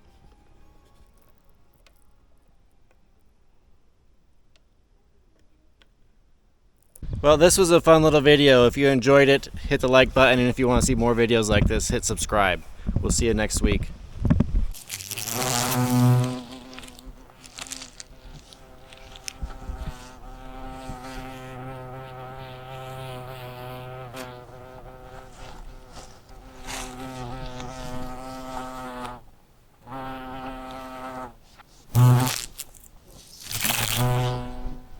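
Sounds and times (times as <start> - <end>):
bee buzzing in flight: 14.8 - 34.9.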